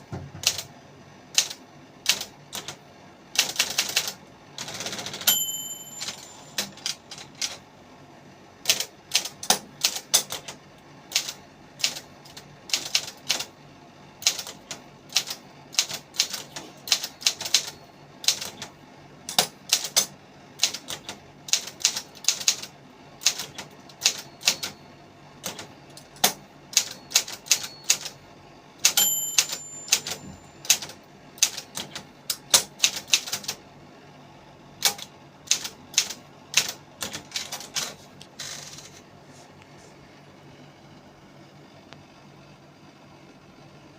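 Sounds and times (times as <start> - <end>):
typewriter carriage return: 0.2 - 0.7, 1.4 - 2.8, 3.4 - 7.6, 8.6 - 13.5, 14.2 - 18.7, 19.3 - 24.8, 25.4 - 28.2, 28.8 - 33.6, 34.8 - 39.0
typewriter key strikes: 0.4 - 0.7, 8.7 - 10.6, 14.2 - 18.7, 19.3 - 24.8, 25.4 - 28.2, 28.8 - 33.6, 34.8 - 38.0
typewriter bell ringing: 4.8 - 7.4, 16.4 - 17.8, 24.0 - 24.9, 26.8 - 28.2, 28.8 - 30.9.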